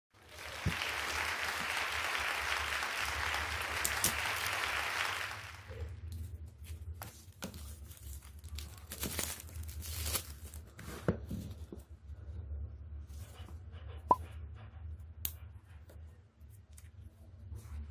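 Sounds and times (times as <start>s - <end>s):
packaging tearing: 7.9s - 10.7s.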